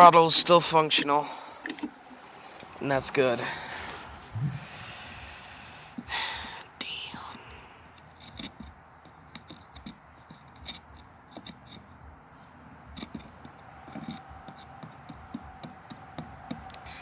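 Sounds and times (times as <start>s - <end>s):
light clicks and scratches on metal: 6.8s - 17.0s.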